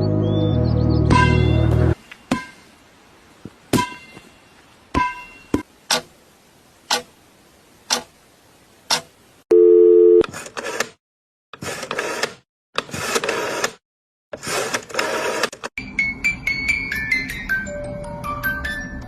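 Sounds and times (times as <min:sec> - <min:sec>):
music: 0:00.0 - 0:02.0, 0:15.8 - 0:19.0.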